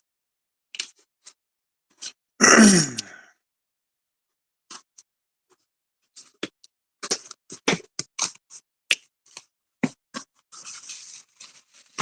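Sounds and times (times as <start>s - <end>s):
packing material rustling: 10.5s - 12.0s.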